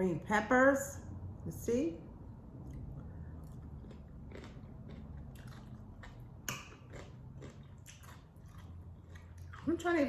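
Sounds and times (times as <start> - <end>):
low steady hum: 0.0 - 10.0
person chewing food: 2.6 - 9.8.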